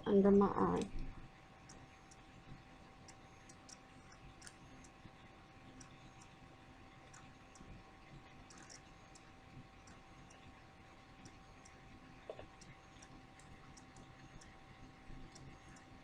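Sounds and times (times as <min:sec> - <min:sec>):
faint steady hum: 0:00.0 - 0:16.0
faint small clicks: 0:00.8 - 0:05.0, 0:07.0 - 0:07.8, 0:08.4 - 0:10.5, 0:11.2 - 0:14.6, 0:15.2 - 0:16.0.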